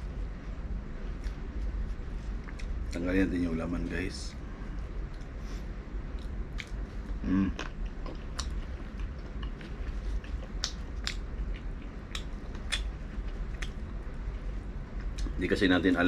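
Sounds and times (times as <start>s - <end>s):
steady low background hum: 0.0s - 16.0s
person chewing with mouth clicks: 2.4s - 2.8s, 6.1s - 13.9s.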